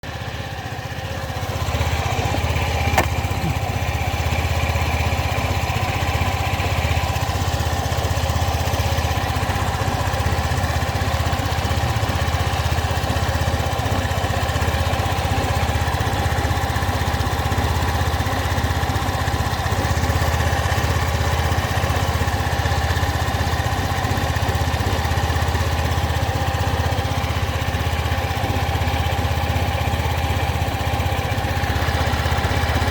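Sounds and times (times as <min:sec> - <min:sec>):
scooter engine running: 0:00.0 - 0:32.9.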